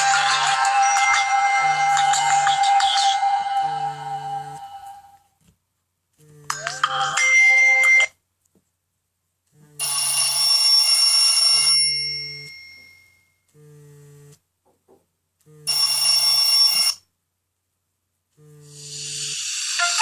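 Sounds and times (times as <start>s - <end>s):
electronic phone ringtone: 0.0s - 5.2s, 9.8s - 13.4s, 15.7s - 17.1s
phone vibration buzzing: 13.5s - 14.4s, 15.4s - 16.8s, 18.4s - 19.4s.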